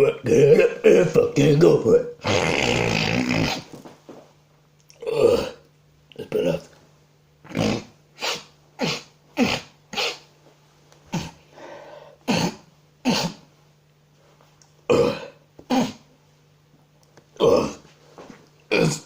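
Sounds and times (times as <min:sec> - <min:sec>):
man sniffing hard: 0:07.6 - 0:10.3.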